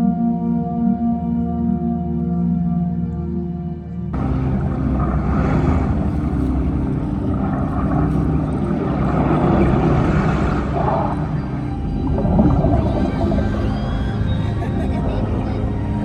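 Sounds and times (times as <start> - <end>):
soft tonal music: 0.0 - 16.0
rumbling film sound effects: 4.2 - 16.0.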